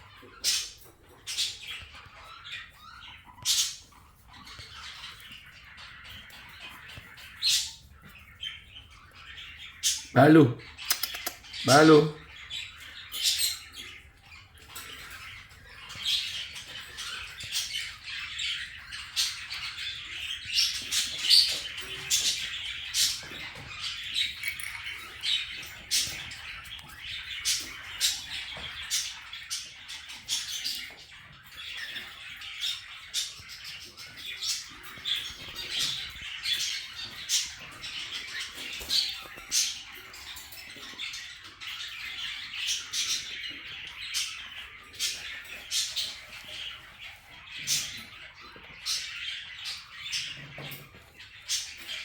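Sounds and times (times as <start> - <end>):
parakeets chattering: 0.0 - 52.0
sharp clicks: 10.8 - 11.4.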